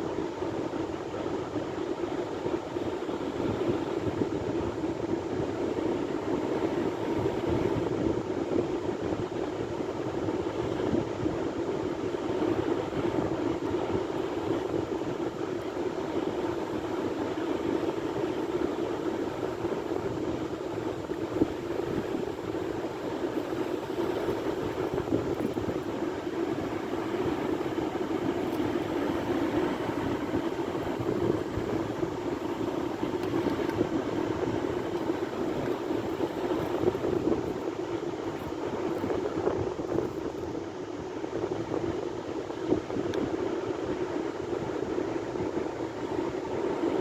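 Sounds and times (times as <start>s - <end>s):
sea waves breaking: 11.7s - 39.4s.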